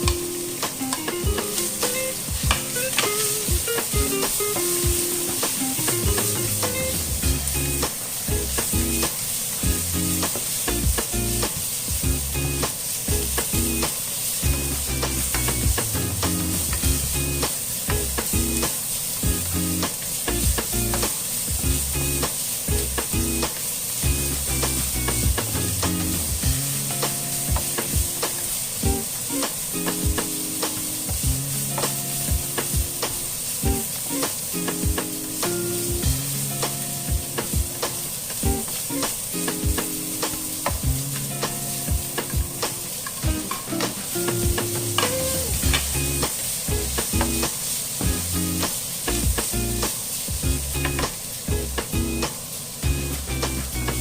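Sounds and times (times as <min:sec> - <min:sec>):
utensil clicking in pan: 0:00.0 - 0:06.4
food sizzling in oil: 0:00.0 - 0:54.0.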